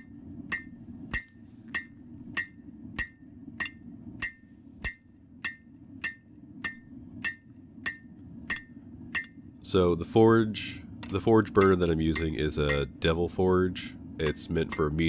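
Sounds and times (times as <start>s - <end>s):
hammer striking steel on anvil: 0.0s - 9.4s, 11.6s - 13.1s, 14.2s - 15.0s.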